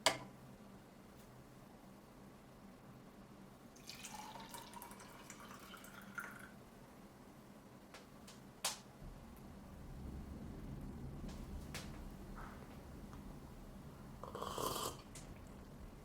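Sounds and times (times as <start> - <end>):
liquid pouring into a cup: 3.8 - 6.6.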